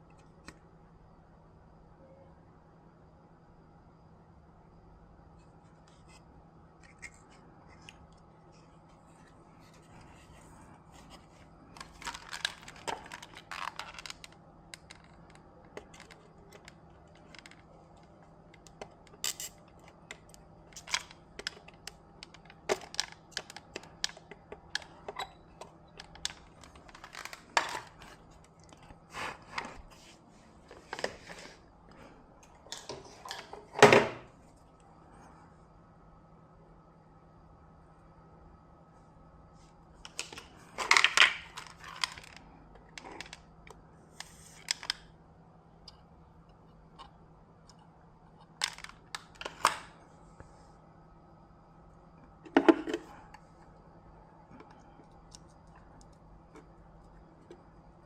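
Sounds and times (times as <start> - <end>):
faint steady hum: 0.0 - 58.0.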